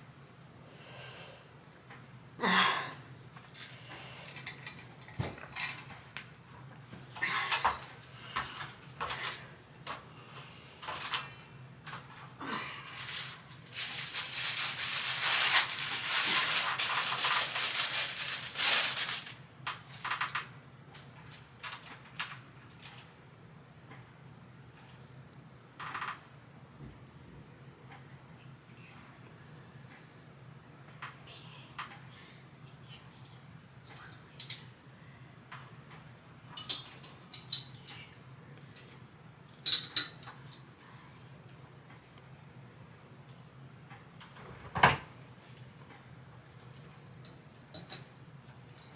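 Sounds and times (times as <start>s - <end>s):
packaging rustling and rattling: 13.0s - 20.5s.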